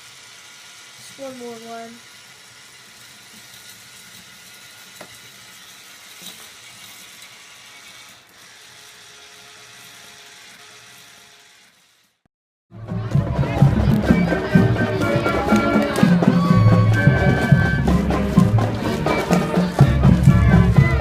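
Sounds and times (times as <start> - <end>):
small motor whirring: 0.0 - 12.3.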